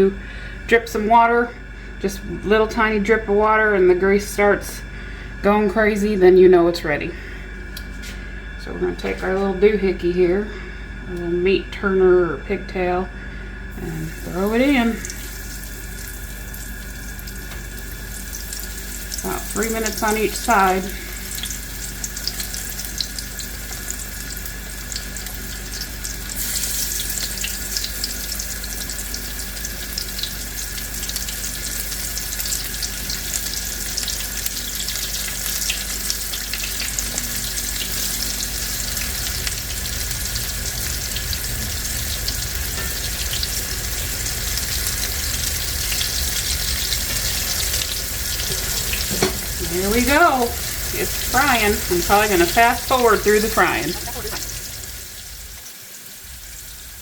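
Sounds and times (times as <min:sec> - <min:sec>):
tomato slices frying in grease: 0:13.7 - 0:57.0.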